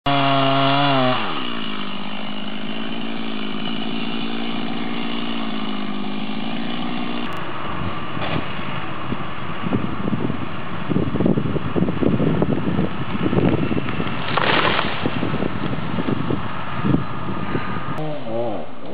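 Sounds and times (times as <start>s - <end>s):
chainsaw revving and idling: 0.0s - 7.4s, 13.3s - 17.0s, 17.8s - 18.8s
gusty wind noise: 7.4s - 18.0s.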